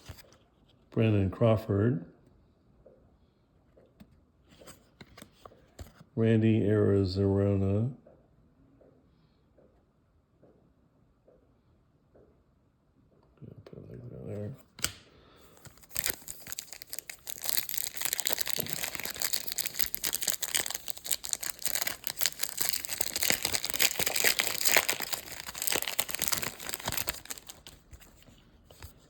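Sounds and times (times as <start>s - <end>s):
plastic wrapper tearing and crinkling: 15.6s - 28.9s.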